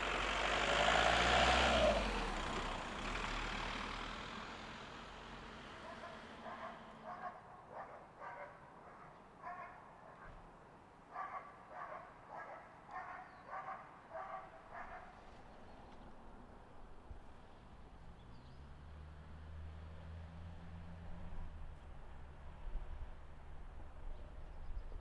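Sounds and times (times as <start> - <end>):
dog barking: 5.8 - 10.3, 11.1 - 15.2.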